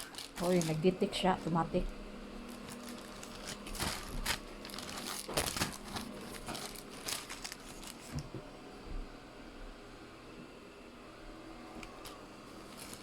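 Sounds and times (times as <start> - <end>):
crinkling and rustling: 0.0 - 8.5, 11.8 - 13.0
faint steady hum: 0.0 - 13.0.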